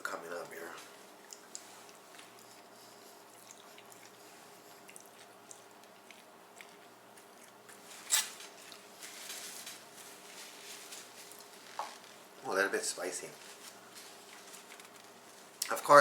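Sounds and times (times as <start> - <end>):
person chewing noodles: 0.9 - 7.9, 8.6 - 8.9.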